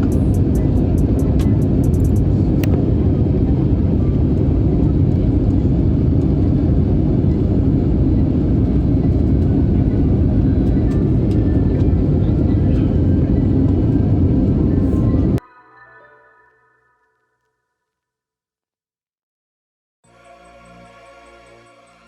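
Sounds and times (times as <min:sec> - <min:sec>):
vehicle rumble in motion: 0:00.0 - 0:15.4.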